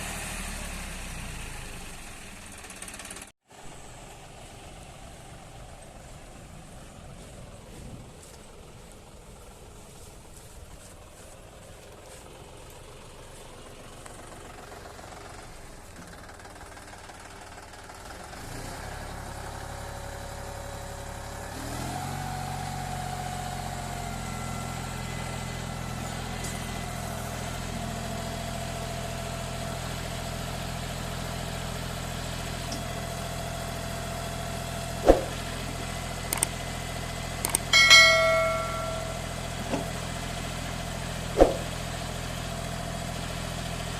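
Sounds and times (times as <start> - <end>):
tractor diesel engine running: 0.0 - 43.9
engine whine: 32.7 - 43.9
sharp knock: 35.1 - 35.4, 41.4 - 41.7
ringing metallic clank: 37.6 - 39.9.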